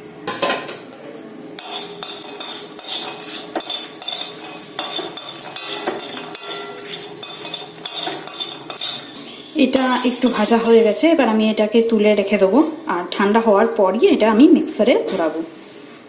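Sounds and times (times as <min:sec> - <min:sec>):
metal clink: 0:01.6 - 0:09.2, 0:09.8 - 0:11.0
spatula scraping spices in pan: 0:01.6 - 0:09.2, 0:09.8 - 0:11.2.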